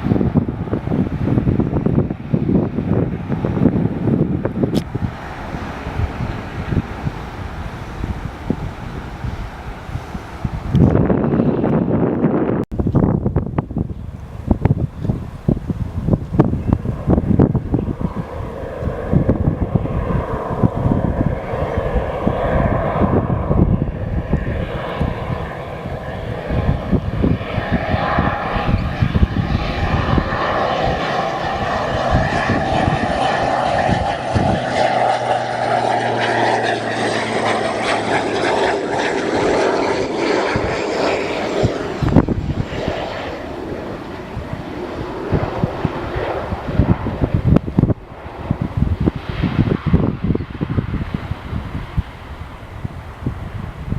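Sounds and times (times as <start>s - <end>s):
airliner engines passing: 0.0s - 53.9s
wind buffeting microphone: 0.0s - 53.9s.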